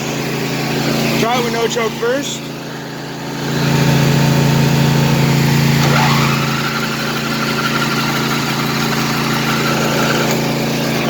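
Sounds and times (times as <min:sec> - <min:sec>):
engine cranking on starter: 0:03.0 - 0:11.0.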